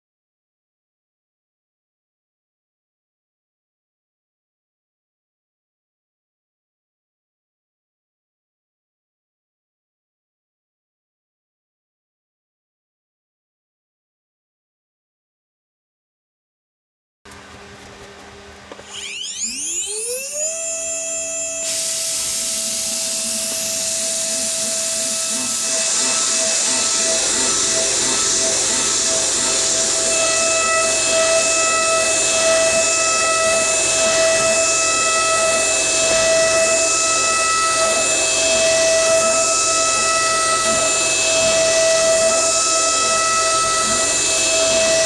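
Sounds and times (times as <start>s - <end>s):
router spindle whining: 18.6s - 45.0s.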